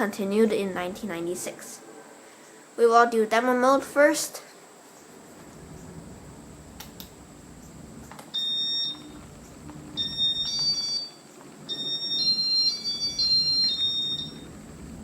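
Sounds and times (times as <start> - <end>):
faint clicks: 6.8 - 8.3
high electronic beeping tones: 8.3 - 9.2, 9.9 - 14.5.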